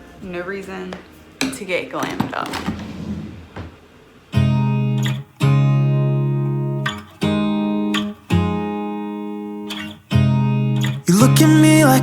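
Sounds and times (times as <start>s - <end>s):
acoustic guitar strumming chords: 4.4s - 12.0s.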